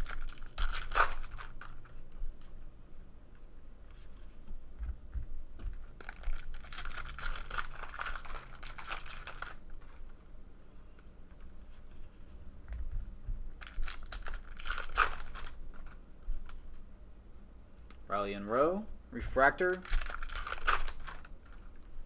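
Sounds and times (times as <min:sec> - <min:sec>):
foil wrapper tearing and crinkling: 0:00.0 - 0:02.1, 0:05.8 - 0:10.1, 0:13.6 - 0:16.0, 0:19.6 - 0:21.9
faint low hum: 0:00.0 - 0:22.0.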